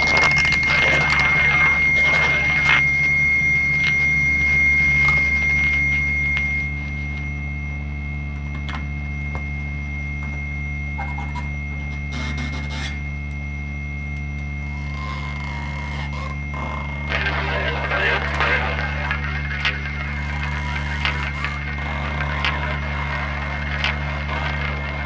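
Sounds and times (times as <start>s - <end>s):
scattered clicks: 0.0s - 2.8s, 14.0s - 25.0s
high whistling tone: 0.0s - 13.7s
low electronic drone: 0.0s - 25.0s.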